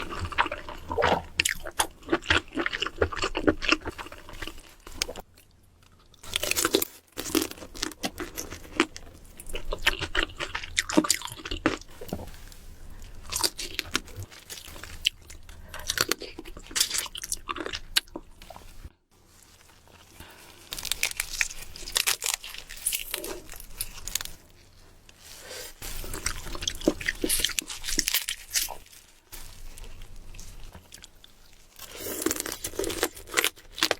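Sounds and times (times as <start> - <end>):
crunching and chewing crisp food: 0.0 - 33.9.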